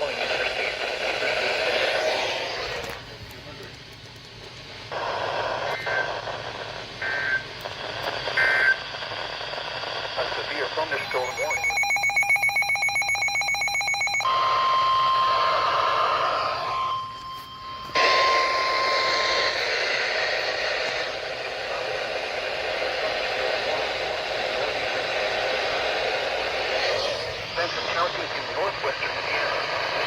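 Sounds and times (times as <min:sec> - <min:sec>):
radio static hiss: 0:00.0 - 0:03.8, 0:04.8 - 0:11.8, 0:18.0 - 0:30.0
pulsing buzzy alert tone: 0:26.8 - 0:28.5.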